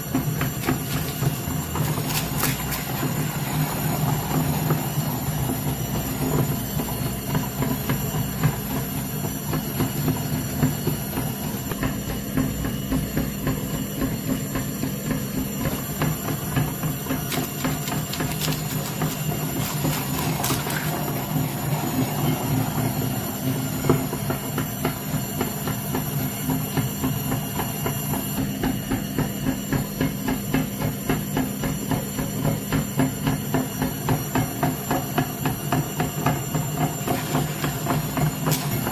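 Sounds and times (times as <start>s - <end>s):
meat grinder motor hum: 0.0s - 38.9s
rhythmic crunching clicks: 17.2s - 21.1s.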